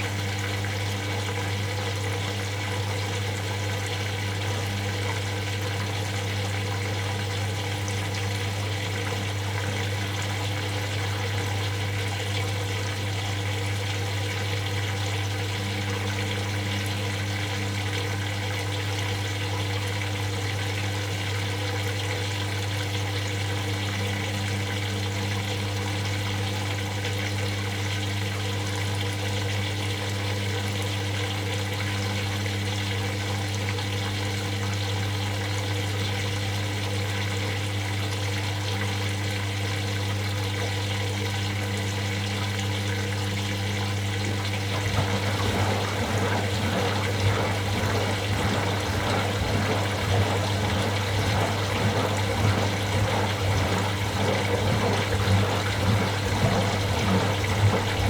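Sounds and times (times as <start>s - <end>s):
washing machine hum: 0.0s - 26.5s, 43.4s - 58.0s
water rushing in washing machine: 0.0s - 58.0s.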